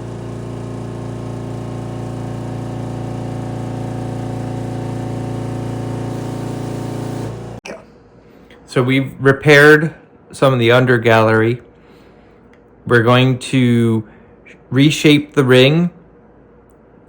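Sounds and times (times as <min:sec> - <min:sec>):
electric motor humming: 0:00.0 - 0:07.6.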